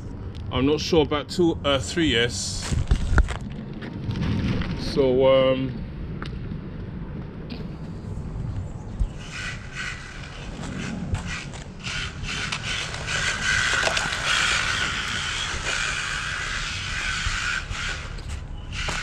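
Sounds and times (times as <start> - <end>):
tyres scraping on road: 7.5 - 19.0
rc car motor whine: 9.1 - 19.0.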